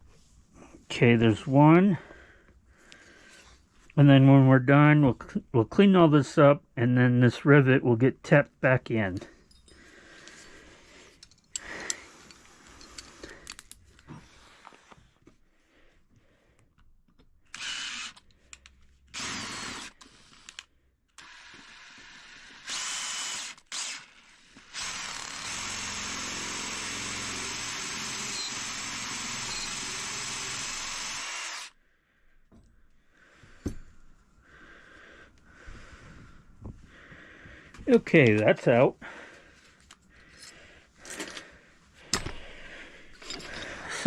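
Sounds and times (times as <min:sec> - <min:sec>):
electric drill drilling: 0:17.5 - 0:18.2, 0:19.1 - 0:20.6, 0:21.2 - 0:31.8.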